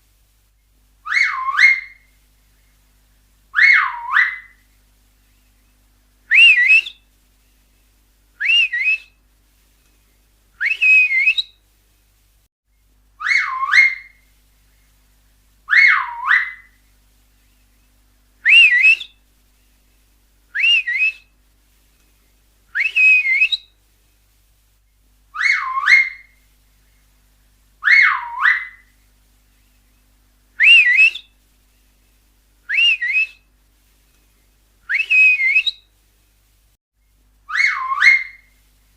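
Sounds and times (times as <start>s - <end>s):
finger whistles: 6.3s - 7.0s, 8.4s - 9.1s, 10.6s - 11.5s, 18.5s - 19.2s, 20.6s - 21.3s, 22.8s - 23.7s, 30.6s - 31.3s, 32.7s - 33.4s, 34.9s - 35.8s.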